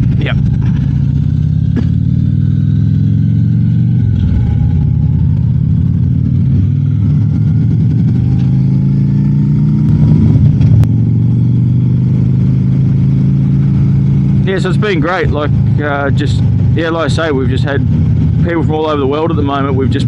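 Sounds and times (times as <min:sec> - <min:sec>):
motorcycle engine running: 0:00.0 - 0:20.0.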